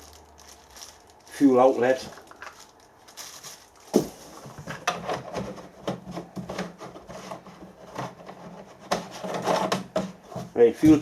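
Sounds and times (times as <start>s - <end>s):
parts knocking and clicking: 4.0s - 10.6s.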